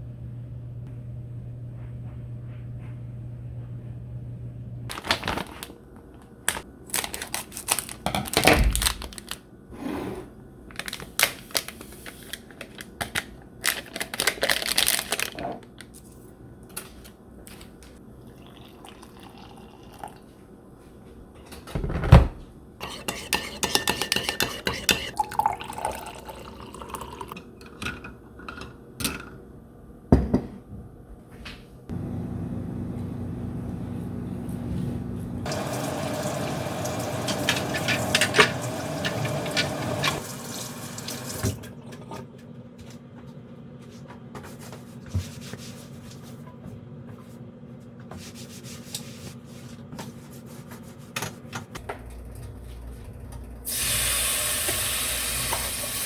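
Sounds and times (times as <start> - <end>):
dishes and utensils clattering: 22.8 - 25.2, 37.2 - 40.2
tap running: 35.5 - 40.2.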